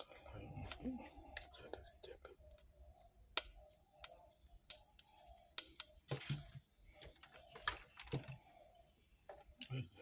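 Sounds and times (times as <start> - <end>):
small tools clicking and tapping: 2.5 - 9.7.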